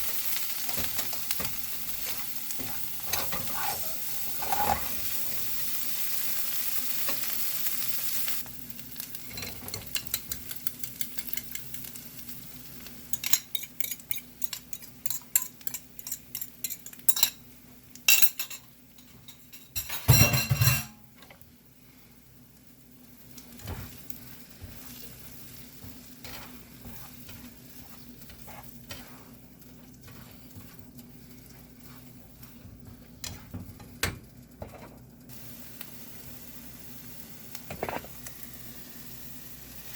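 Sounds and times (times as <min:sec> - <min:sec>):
food sizzling in a pan: 0:00.0 - 0:39.9
utensil scraping a pan: 0:00.8 - 0:05.7, 0:23.6 - 0:33.9.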